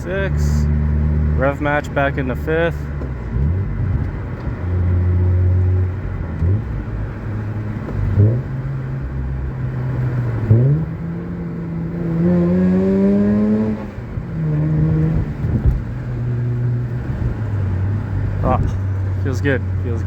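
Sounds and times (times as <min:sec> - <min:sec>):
rotary car engine revving: 0:00.0 - 0:20.0.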